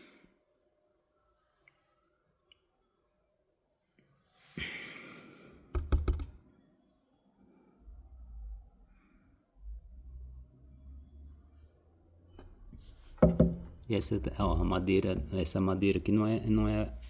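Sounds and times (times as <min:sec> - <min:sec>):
sharp knocks on wood: 0:05.7 - 0:06.4, 0:13.2 - 0:13.7.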